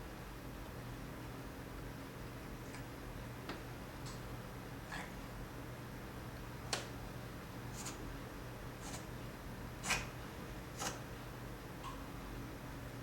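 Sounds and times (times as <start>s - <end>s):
cat sneezing: 9.8s - 10.2s.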